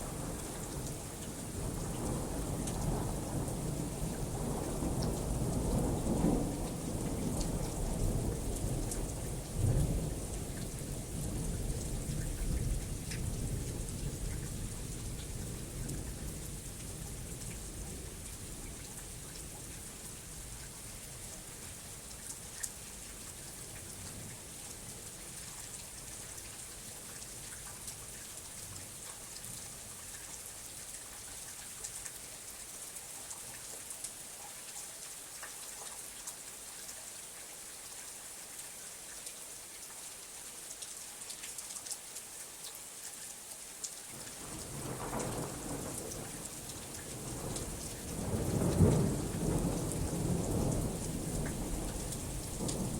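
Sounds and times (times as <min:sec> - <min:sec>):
steady rain hiss: 0:00.0 - 0:52.9
rain drop ticks: 0:00.7 - 0:02.9, 0:10.3 - 0:14.6, 0:22.1 - 0:24.4, 0:25.3 - 0:37.0, 0:40.7 - 0:52.9
low thunder rumble: 0:44.4 - 0:52.9.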